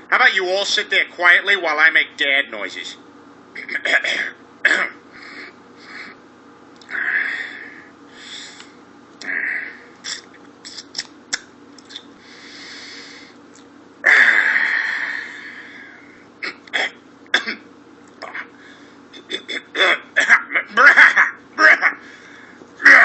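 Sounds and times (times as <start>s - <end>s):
man sniffing: 5.1s - 6.2s, 6.9s - 11.1s, 12.2s - 13.4s
mouth clicks: 8.4s - 9.4s, 10.0s - 12.1s
man exhaling wheezily: 14.0s - 16.0s.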